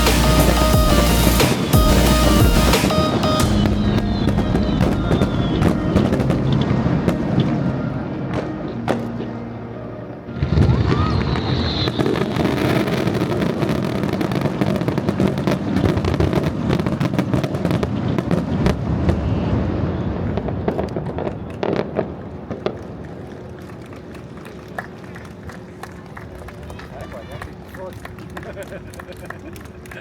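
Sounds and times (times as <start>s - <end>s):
fireworks bangs and crackling: 0.0s - 9.3s, 10.5s - 25.0s.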